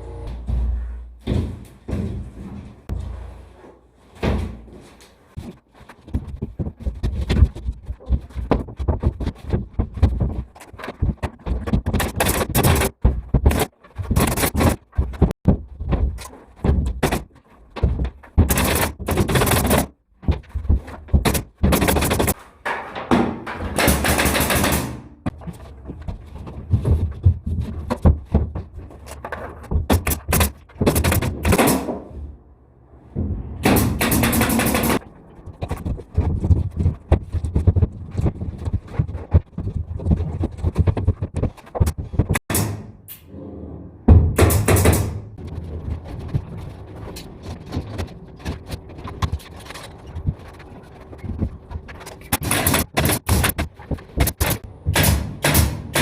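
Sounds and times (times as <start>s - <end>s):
sharp knocks and bangs: 6.0s - 25.5s, 26.6s - 32.4s, 33.1s - 38.4s, 44.0s - 45.4s, 52.3s - 56.0s.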